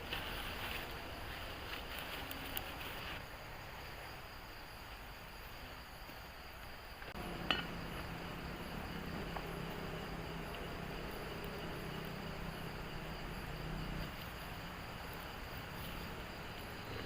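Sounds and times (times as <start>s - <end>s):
background hiss: 0.0s - 17.0s
cooking pots clinking: 7.2s - 9.6s
low hum: 7.2s - 17.0s.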